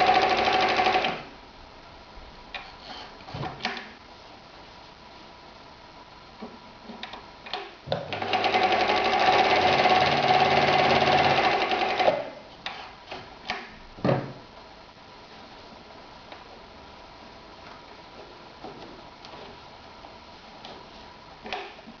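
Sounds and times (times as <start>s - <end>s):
sewing machine stitching: 0.0s - 1.2s, 8.0s - 12.3s.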